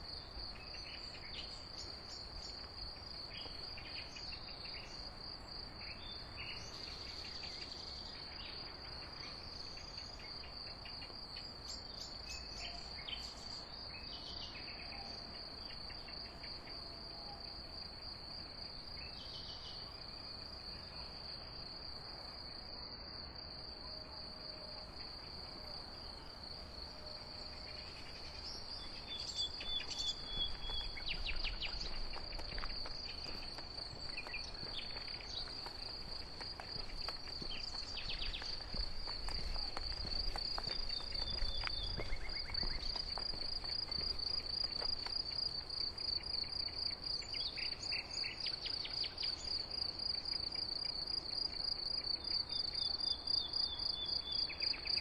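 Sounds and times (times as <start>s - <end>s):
crickets trilling: 0.0s - 55.0s
bird calls and chirps: 5.8s - 16.5s, 27.4s - 45.5s, 46.2s - 49.7s.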